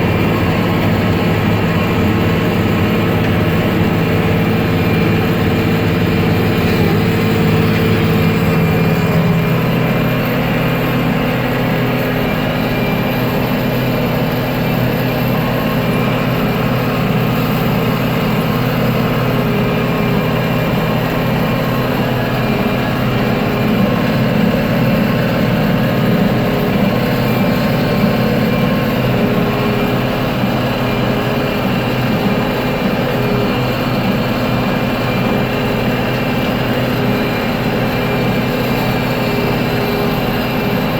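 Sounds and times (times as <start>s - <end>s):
baler working: 0.0s - 13.9s
tractor diesel engine under load: 0.0s - 40.9s.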